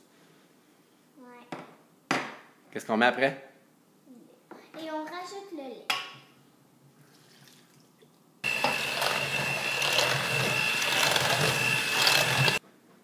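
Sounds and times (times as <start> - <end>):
electric mixer whining: 8.4 - 12.6.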